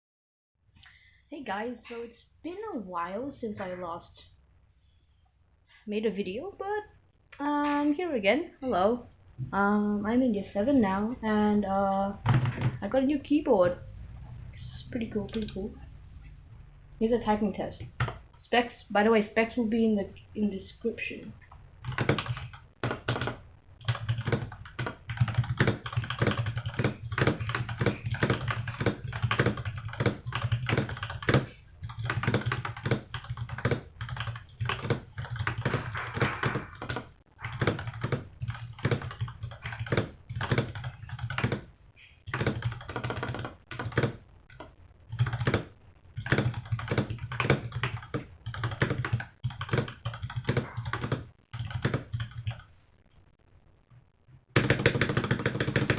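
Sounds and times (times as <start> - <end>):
mechanical keyboard typing: 12.2 - 13.0, 17.8 - 18.2, 21.8 - 41.7, 42.3 - 52.7, 54.5 - 55.9.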